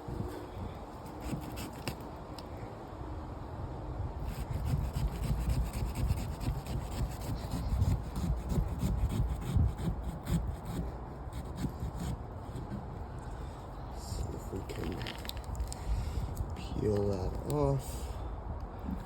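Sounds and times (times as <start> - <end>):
scraping pumpkin by hand: 4.3 - 13.2.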